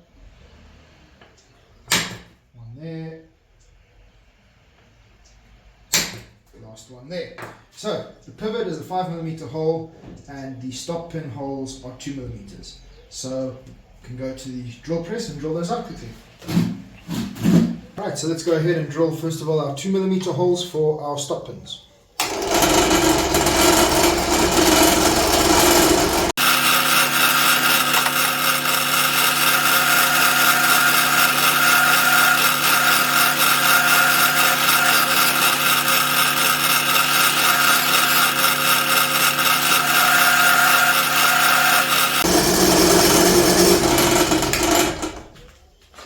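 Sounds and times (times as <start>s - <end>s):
drill press boring into steel: 22.2s - 45.4s.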